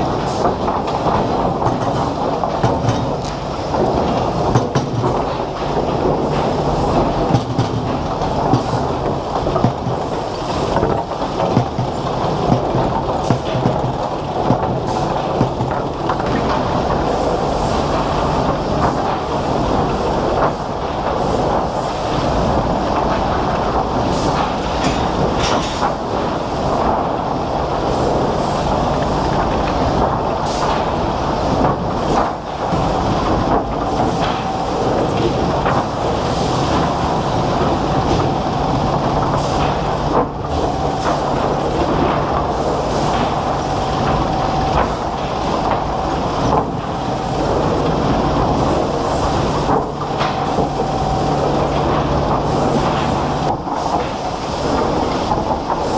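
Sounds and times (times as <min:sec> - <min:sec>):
wood-processing machinery clatter: 0:00.0 - 0:55.9.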